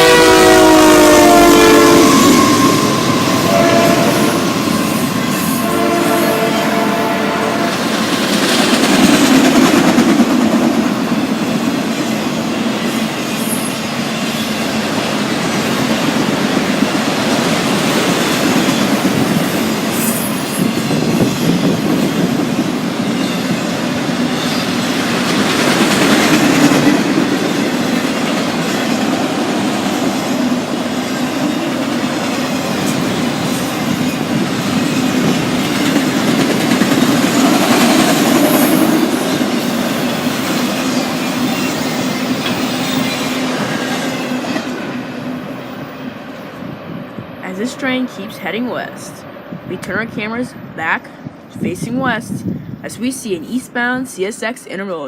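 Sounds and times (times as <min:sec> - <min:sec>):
freight train wheels rumbling: 0:00.0 - 0:53.9
high wheel squeals: 0:01.6 - 0:07.1
clickety-clack over rail joints: 0:07.9 - 0:45.0.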